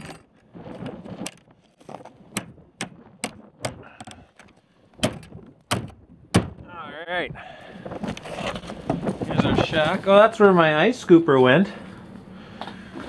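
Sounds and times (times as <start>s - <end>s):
sharp knocks and clicks: 2.0s - 6.7s.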